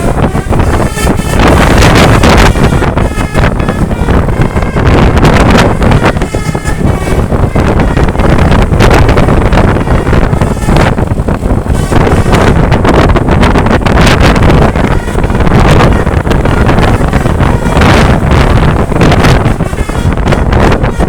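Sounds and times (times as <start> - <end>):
bus horn tones: 0.0 - 21.0
wind buffeting microphone: 0.0 - 21.0.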